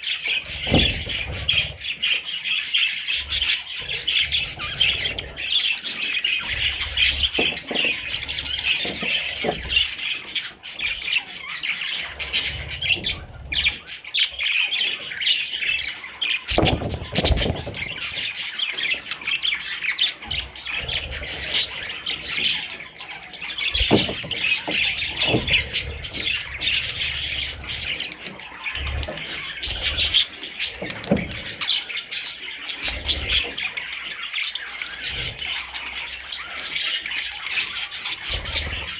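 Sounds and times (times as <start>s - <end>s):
budgerigars chattering and chirping: 0.0s - 38.9s
dull thumps: 16.5s - 18.3s, 23.8s - 27.3s.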